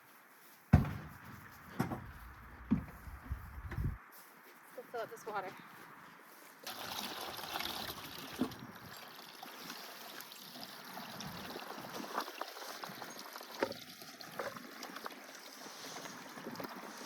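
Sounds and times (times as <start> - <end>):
water pouring into container: 6.6 - 17.0.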